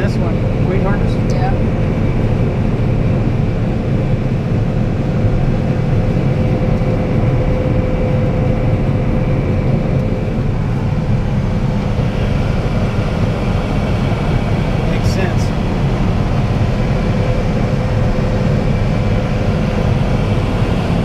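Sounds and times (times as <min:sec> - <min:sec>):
combine low drone: 0:00.0 - 0:21.0
steady machine whine: 0:00.0 - 0:21.0.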